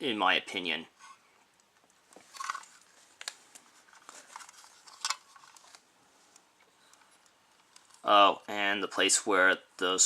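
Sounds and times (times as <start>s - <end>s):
plastic parts rustling: 2.1s - 5.9s
plastic parts clicking: 2.4s - 5.8s.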